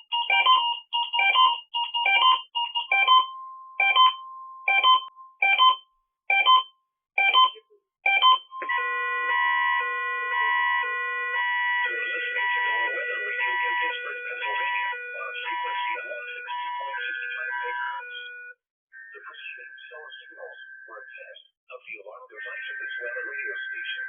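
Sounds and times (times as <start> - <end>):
electronic keyboard music: 0.0 - 4.0, 8.3 - 21.0, 22.4 - 24.0.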